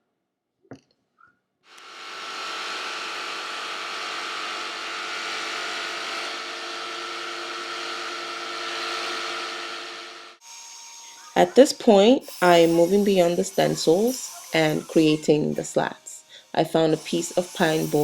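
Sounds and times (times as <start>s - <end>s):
jigsaw cutting plywood: 1.7s - 10.4s.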